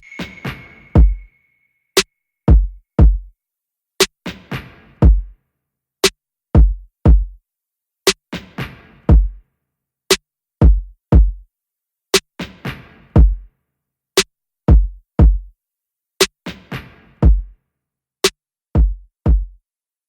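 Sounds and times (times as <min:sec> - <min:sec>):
music with electronic drum beat: 0:00.0 - 0:01.4, 0:02.5 - 0:03.3, 0:04.3 - 0:05.4, 0:06.0 - 0:07.4, 0:08.1 - 0:09.4, 0:10.6 - 0:11.4, 0:12.2 - 0:13.5, 0:14.7 - 0:15.5, 0:16.2 - 0:17.5, 0:18.2 - 0:19.6
deep kick drum: 0:01.0 - 0:01.3, 0:02.5 - 0:03.3, 0:05.0 - 0:05.3, 0:06.6 - 0:07.4, 0:09.1 - 0:09.4, 0:10.6 - 0:11.4, 0:13.2 - 0:13.5, 0:14.7 - 0:15.5, 0:17.2 - 0:17.5, 0:18.8 - 0:19.6.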